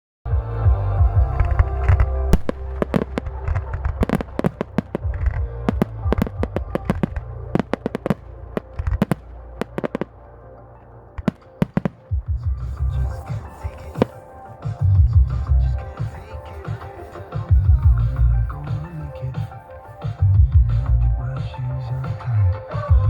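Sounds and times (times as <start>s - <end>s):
music with heavy bass: 0.3s - 23.0s
fireworks bangs: 2.3s - 10.1s, 11.2s - 12.4s.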